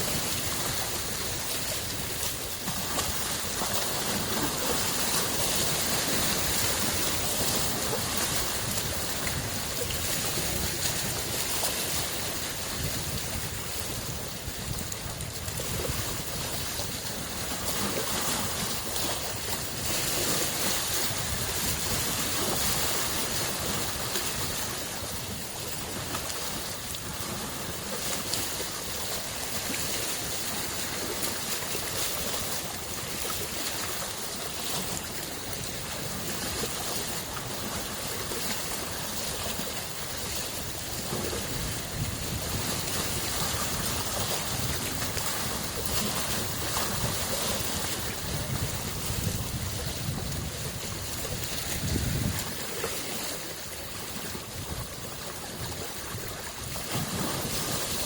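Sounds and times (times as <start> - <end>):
lake waves washing on shore: 0.0 - 58.0.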